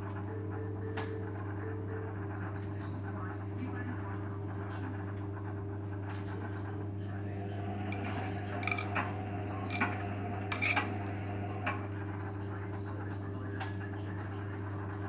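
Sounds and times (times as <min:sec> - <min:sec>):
washing machine motor hum: 0:04.1 - 0:15.0.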